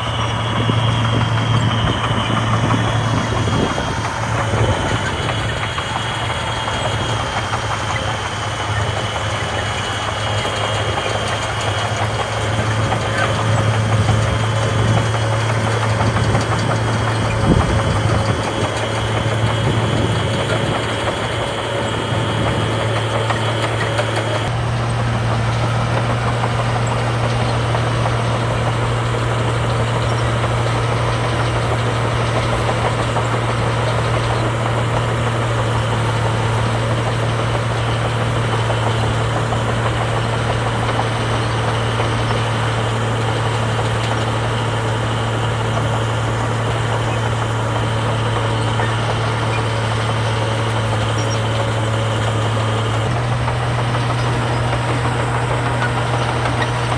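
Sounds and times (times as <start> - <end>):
high whine: 0.0 - 9.7
heavy diesel engine running: 0.0 - 56.9.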